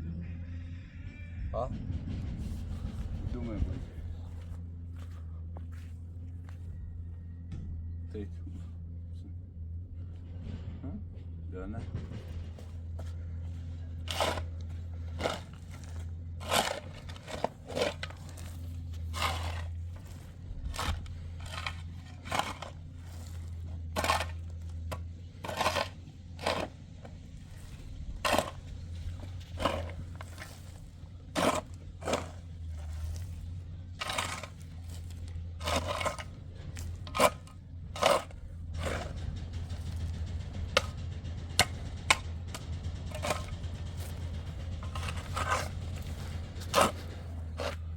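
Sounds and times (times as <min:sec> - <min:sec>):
steady low hum: 0:01.4 - 0:47.9
scraping and crunching strokes: 0:12.4 - 0:47.9.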